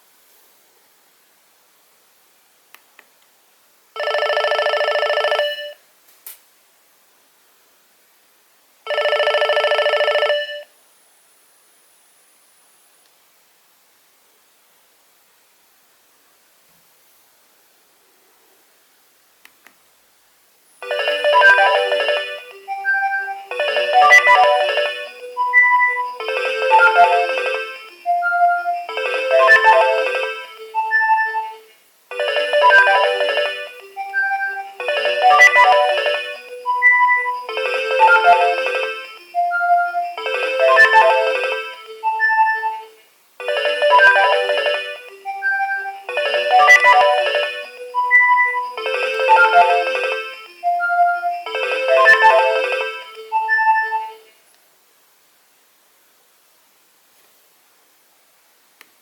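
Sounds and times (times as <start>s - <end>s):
polyphonic phone ringtone: 4.0s - 5.8s, 8.9s - 10.7s, 20.8s - 54.3s.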